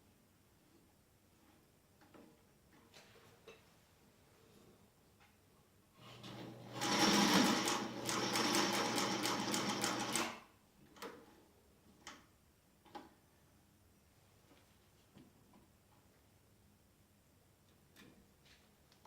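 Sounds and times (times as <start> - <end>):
sewing machine motor hum: 6.0 - 10.4.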